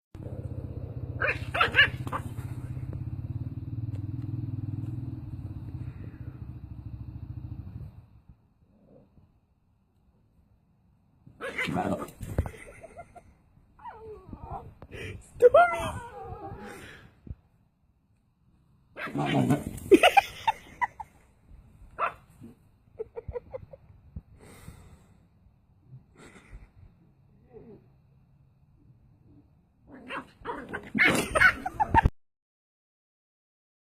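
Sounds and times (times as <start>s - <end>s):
dog barking: 1.2s - 2.3s, 22.0s - 22.2s.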